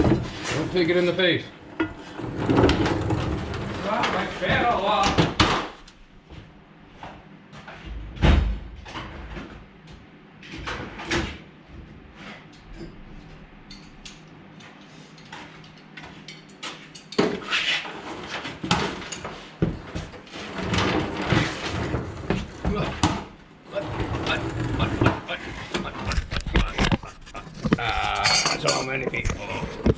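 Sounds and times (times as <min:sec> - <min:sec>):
tools and metal clattering: 0:13.6 - 0:25.3, 0:28.1 - 0:29.2.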